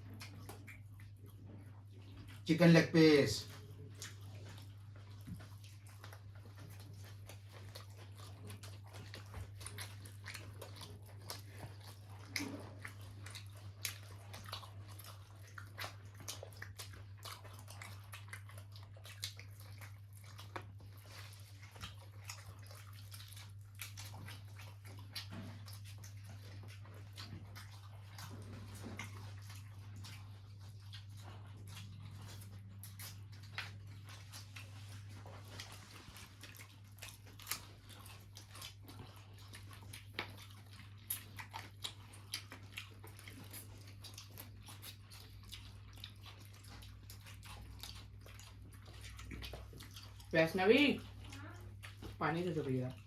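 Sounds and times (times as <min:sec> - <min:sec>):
people chewing fried chicken: 0:00.0 - 0:53.0.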